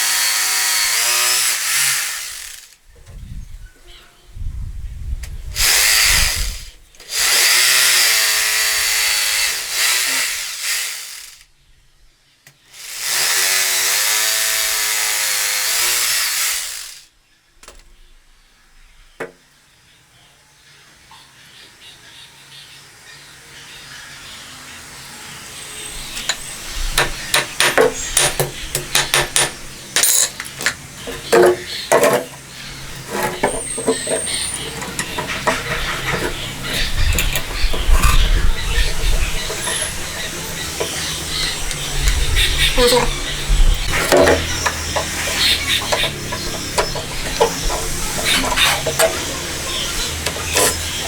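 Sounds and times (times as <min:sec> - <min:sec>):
handheld power tool running: 0:00.0 - 0:02.8, 0:05.6 - 0:11.5, 0:12.8 - 0:17.1, 0:24.8 - 0:51.0
sharp clicks and knocks: 0:26.2 - 0:32.4, 0:33.0 - 0:49.5, 0:50.1 - 0:51.0.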